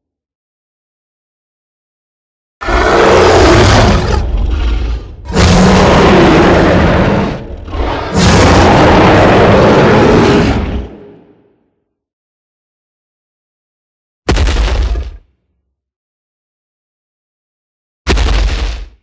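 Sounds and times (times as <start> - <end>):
dinosaur roars: 2.6 - 11.5.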